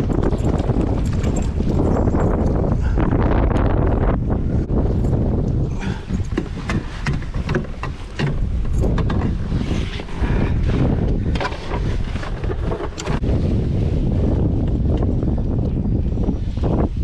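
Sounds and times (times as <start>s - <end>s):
wind buffeting microphone: 0.0s - 17.0s
water slapping against hull: 4.9s - 13.8s.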